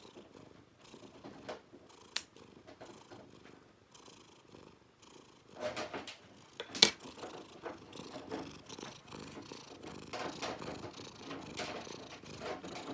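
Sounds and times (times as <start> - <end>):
cat purring: 0.0 - 12.9.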